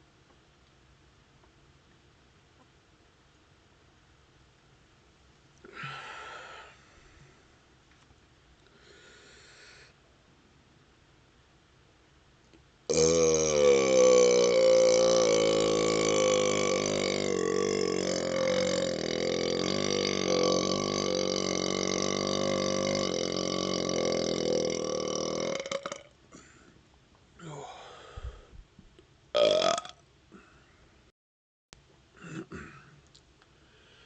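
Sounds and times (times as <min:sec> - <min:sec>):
man burping: 0:12.9 - 0:26.5, 0:29.4 - 0:30.5, 0:32.2 - 0:33.0.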